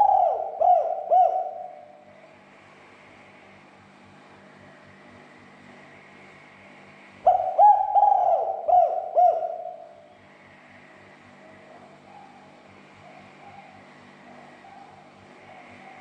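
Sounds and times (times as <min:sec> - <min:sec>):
dove cooing: 0:00.0 - 0:02.2, 0:07.2 - 0:16.0
faint hum: 0:00.0 - 0:16.0.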